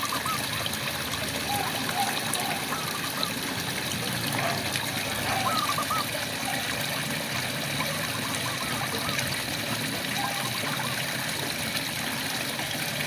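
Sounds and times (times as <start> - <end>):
steady rain falling: 1.2 - 6.6
frogs chirping: 4.9 - 6.7, 10.2 - 10.9.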